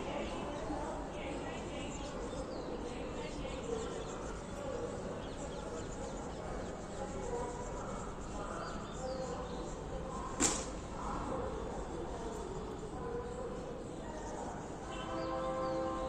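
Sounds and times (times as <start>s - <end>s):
sparrows chirping faintly: 0.0s - 16.0s
steady background noise: 0.0s - 16.0s
sharp click: 10.4s - 10.8s.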